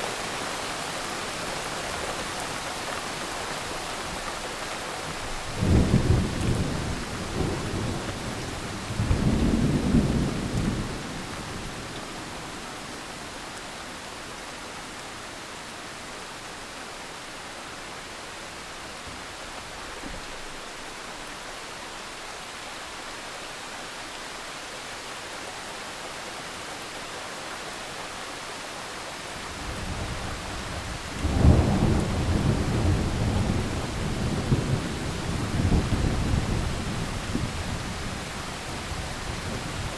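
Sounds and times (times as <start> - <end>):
steady rain hiss: 0.0 - 39.9
rolling thunder: 5.6 - 11.9, 29.6 - 39.9.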